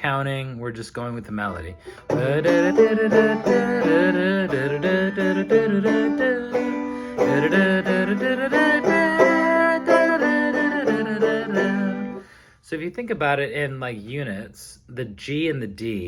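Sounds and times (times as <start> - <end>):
banjo strumming chords: 1.8 - 12.3.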